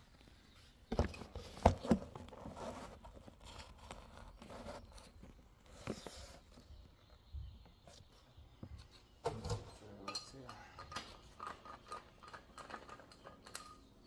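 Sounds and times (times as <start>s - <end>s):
metal tools knocking and clinking: 9.2s - 14.0s.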